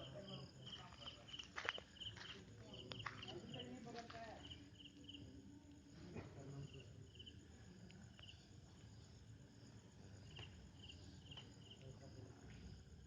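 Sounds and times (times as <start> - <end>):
crickets chirping: 0.0 - 13.0.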